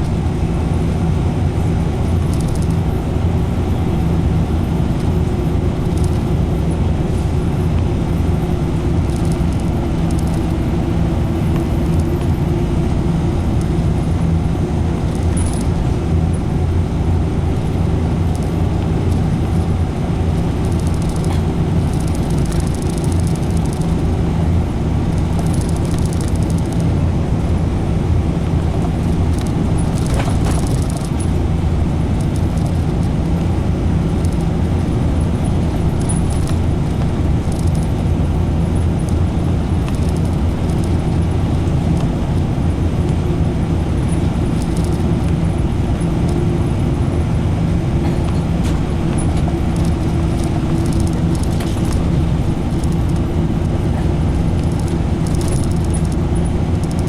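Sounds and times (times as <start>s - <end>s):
bus engine humming: 0.0s - 57.0s
road and tyre noise: 0.0s - 57.0s
light rattles: 4.0s - 57.0s.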